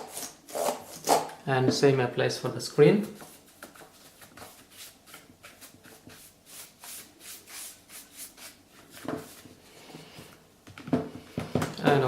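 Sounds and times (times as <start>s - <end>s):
brush sweeping over screen: 3.2s - 9.5s.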